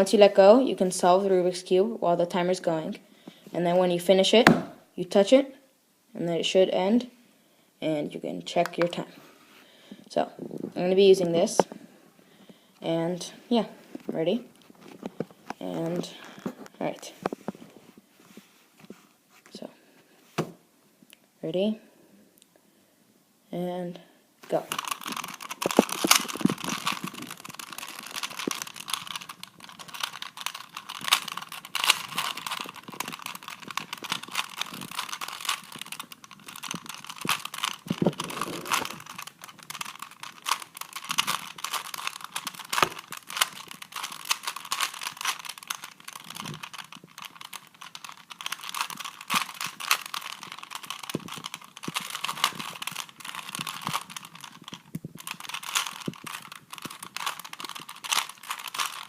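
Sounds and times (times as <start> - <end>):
plastic puzzle cube clicking: 24.5 - 59.0.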